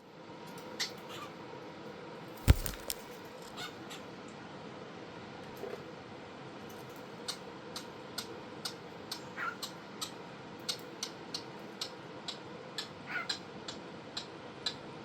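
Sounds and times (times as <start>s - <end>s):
small sharp clicks: 2.4s - 3.1s.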